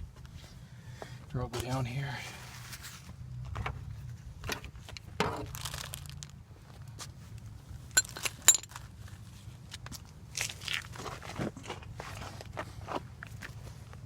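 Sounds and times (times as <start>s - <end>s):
metal tools rattling: 8.0s - 8.8s.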